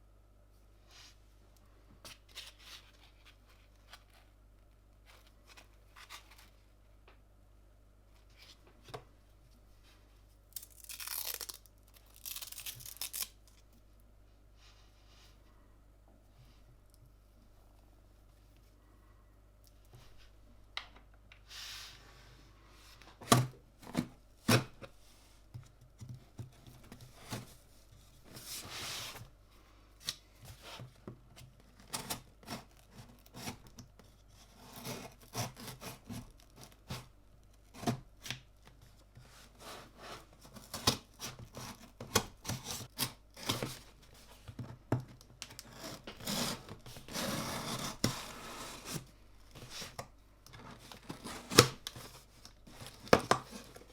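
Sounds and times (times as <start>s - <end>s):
packaging rustling: 10.6s - 13.6s.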